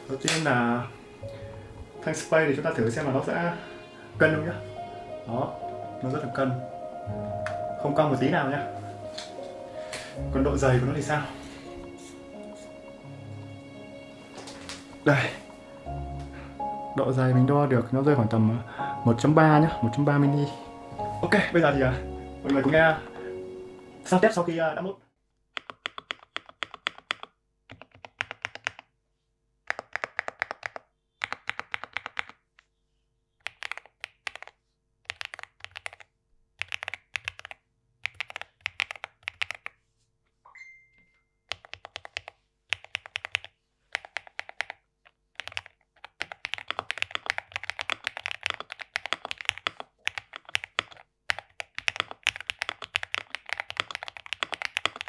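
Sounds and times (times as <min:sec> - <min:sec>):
mechanical keyboard typing: 0:25.6 - 0:28.9, 0:29.7 - 0:32.4, 0:33.4 - 0:39.7, 0:41.5 - 0:55.0.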